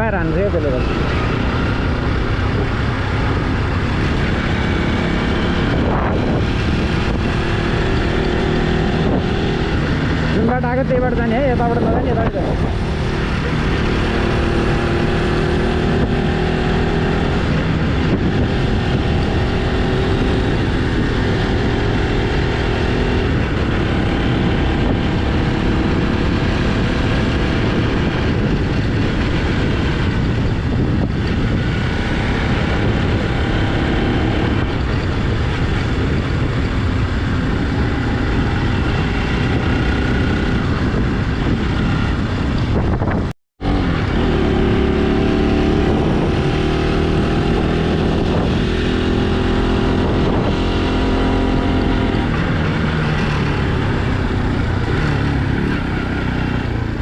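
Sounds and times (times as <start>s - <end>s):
motorcycle engine running: 0.0s - 57.0s
road rumble: 0.0s - 57.0s
wind noise: 0.0s - 57.0s.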